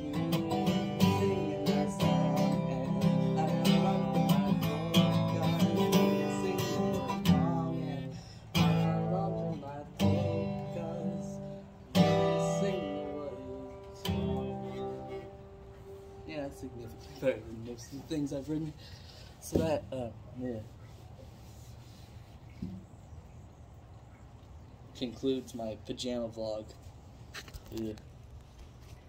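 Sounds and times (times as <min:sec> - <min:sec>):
acoustic guitar strummed chords: 0:00.0 - 0:17.9.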